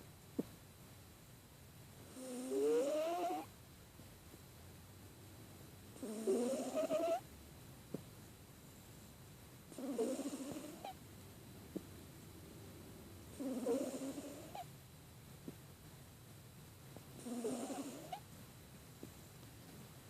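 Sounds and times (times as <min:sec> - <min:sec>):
congested pet snoring: 0:02.1 - 0:03.5, 0:06.0 - 0:07.2, 0:09.7 - 0:11.0, 0:13.3 - 0:14.7, 0:17.2 - 0:18.2.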